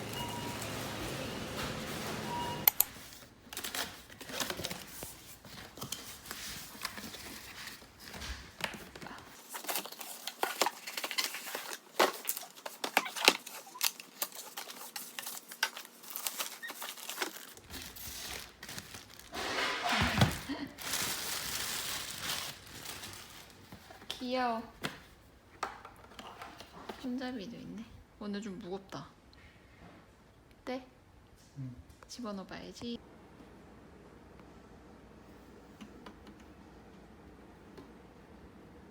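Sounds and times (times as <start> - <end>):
packaging crinkling and tearing: 3.5 - 23.9.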